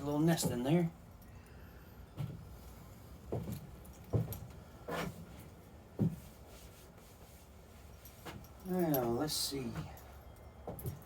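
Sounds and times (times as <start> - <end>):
knocks of tools being handled: 9.7 - 11.0.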